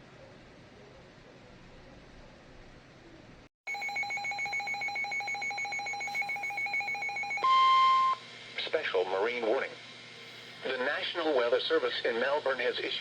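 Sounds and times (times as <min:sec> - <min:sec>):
faint radio hiss: 0:00.0 - 0:03.5, 0:07.7 - 0:13.0.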